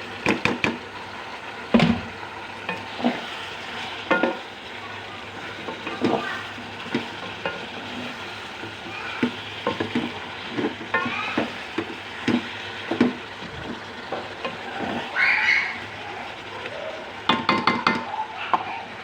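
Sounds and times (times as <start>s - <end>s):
chicken sizzling in oil: 0.0s - 19.0s
spatula scraping a pan: 2.6s - 4.6s, 5.2s - 16.0s.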